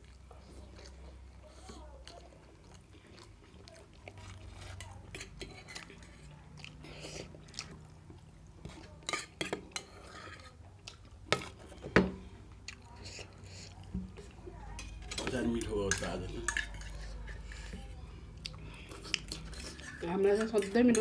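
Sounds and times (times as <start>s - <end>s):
cutlery clinking on a plate: 8.7s - 10.5s, 14.8s - 17.8s.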